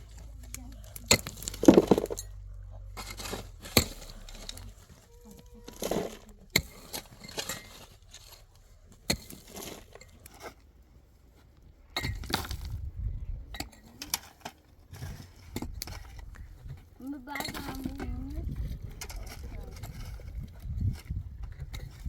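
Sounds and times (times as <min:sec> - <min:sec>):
hard objects clinking and knocking: 0:00.8 - 0:04.8.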